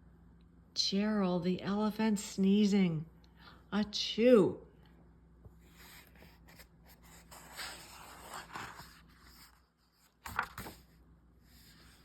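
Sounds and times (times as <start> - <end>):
book pages rustling: 5.5 - 11.0.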